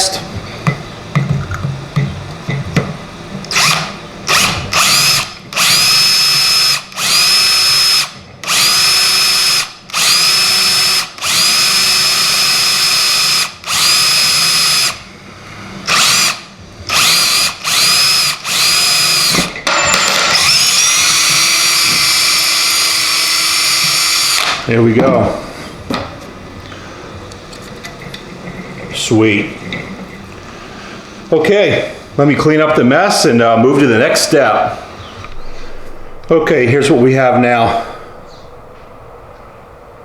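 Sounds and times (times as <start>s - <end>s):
drill spinning up: 3.5s - 15.0s, 15.8s - 24.6s.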